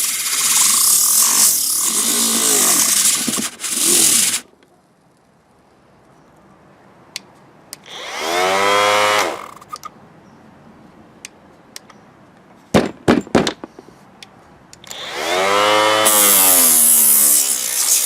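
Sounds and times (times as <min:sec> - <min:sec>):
sander motor whining: 0:14.9 - 0:18.0.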